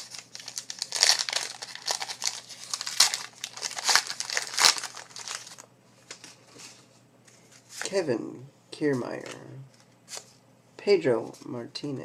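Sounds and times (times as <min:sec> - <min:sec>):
card pack wrapper crinkling: 0:00.0 - 0:06.4.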